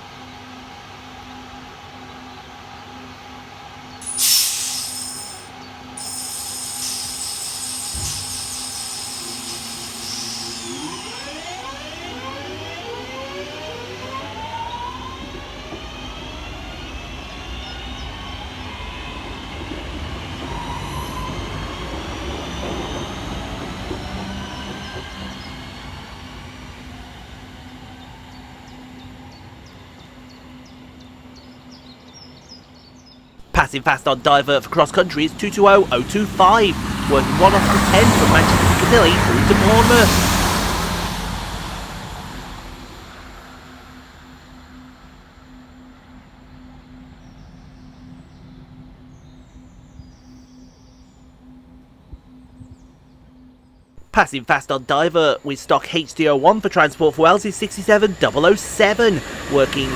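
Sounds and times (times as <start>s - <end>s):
electric train motors whining: 4.0s - 30.0s, 33.4s - 47.2s, 54.0s - 59.9s.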